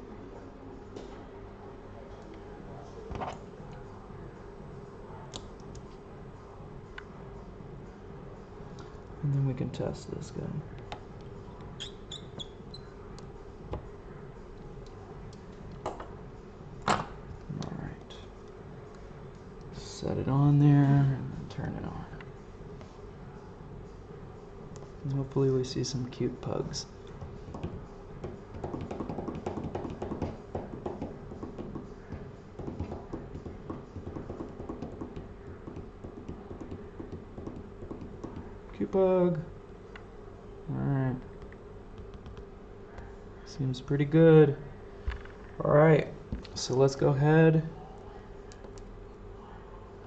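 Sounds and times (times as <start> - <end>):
steady low hum: 0.0 - 50.0
hands tapping a tablet: 27.2 - 38.5.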